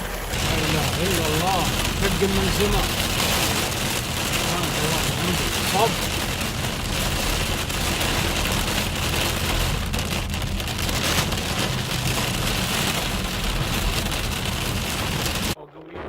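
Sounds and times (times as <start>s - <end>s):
heavy rain pouring: 0.0s - 15.6s
low steady rumble: 0.0s - 15.6s.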